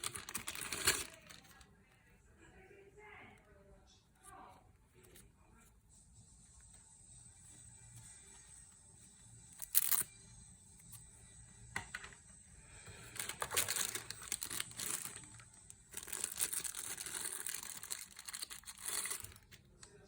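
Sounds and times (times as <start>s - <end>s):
packaging ripping: 0.0s - 1.6s, 13.2s - 19.6s
crinkling rustling packaging: 0.0s - 1.7s, 13.1s - 20.0s.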